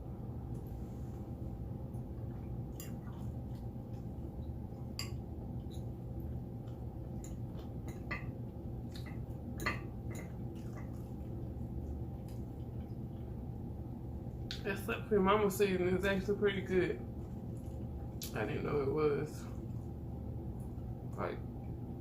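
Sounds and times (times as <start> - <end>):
steady low hum: 0.0 - 22.0
utensil clicking against a dish: 4.9 - 5.9, 6.6 - 11.4.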